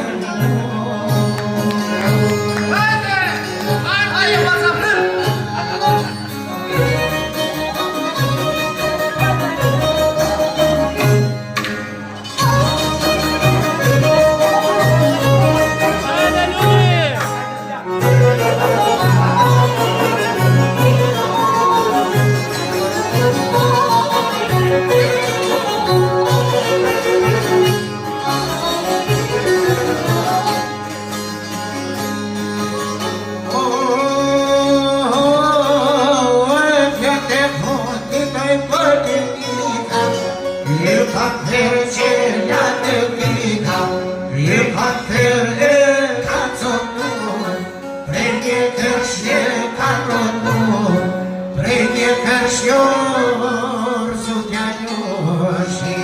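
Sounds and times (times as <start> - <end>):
folk singing: 0.0 - 11.3, 12.4 - 31.8, 32.4 - 56.0
fiddle and strings: 0.0 - 56.0.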